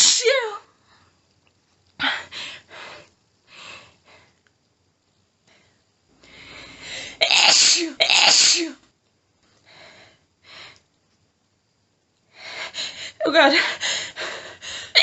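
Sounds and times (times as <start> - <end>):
woman sneezing: 0.0 - 0.6, 7.2 - 8.8
woman panting: 2.0 - 4.3, 6.2 - 7.2, 12.3 - 15.0.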